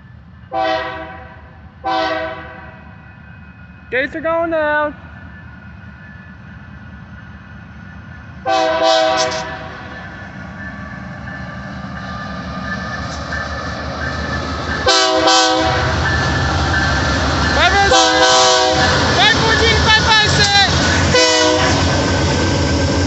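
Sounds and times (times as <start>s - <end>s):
locomotive air horn blasts: 0.5s - 2.8s, 8.4s - 9.9s, 14.8s - 16.0s, 17.7s - 19.0s, 21.1s - 22.0s
diesel engines rumbling: 4.0s - 23.0s.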